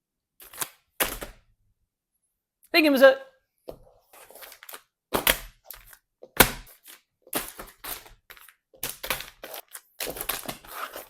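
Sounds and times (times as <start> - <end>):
wipes package crackling: 4.2 - 11.0.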